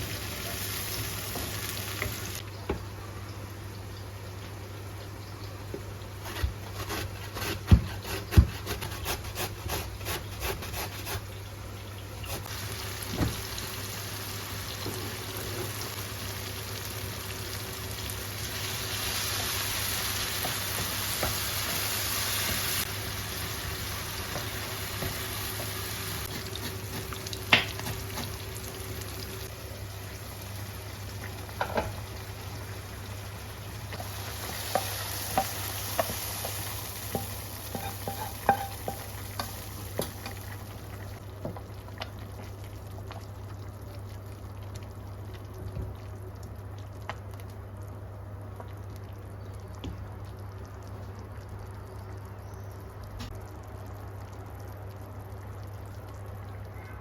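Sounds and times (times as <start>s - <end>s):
food sizzling in a pan: 0.0s - 2.5s, 10.8s - 41.2s.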